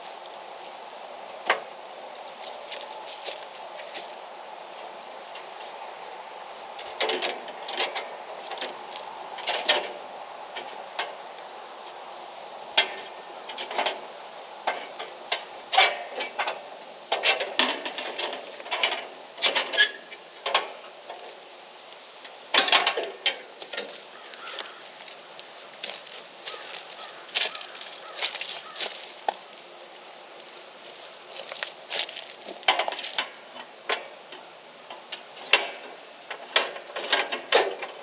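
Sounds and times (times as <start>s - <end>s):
light metal clanks: 6.8s - 11.2s, 12.7s - 21.3s, 22.5s - 24.0s, 31.4s - 38.0s.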